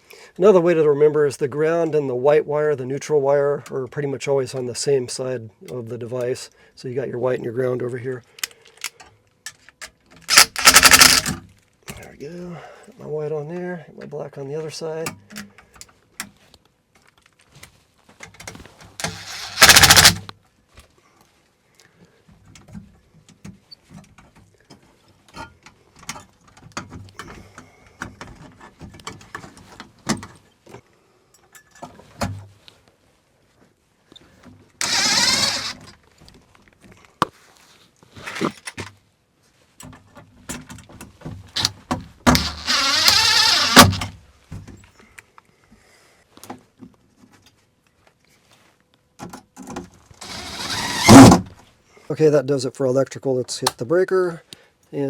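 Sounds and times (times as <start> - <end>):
cordless drill running: 10.3 - 11.3, 19.0 - 20.2, 34.8 - 35.8, 42.3 - 44.1, 50.2 - 51.3
hands clicking and rattling: 10.3 - 11.3, 19.4 - 20.2.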